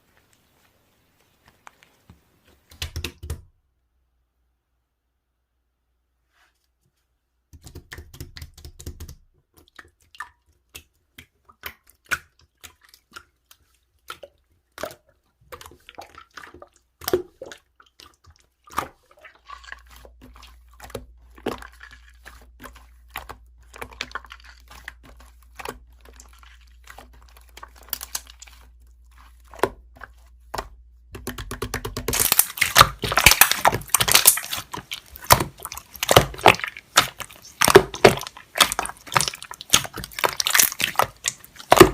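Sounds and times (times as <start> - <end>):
sharp clicks and wet pops: 1.4 - 3.4, 7.5 - 15.7, 20.2 - 41.9.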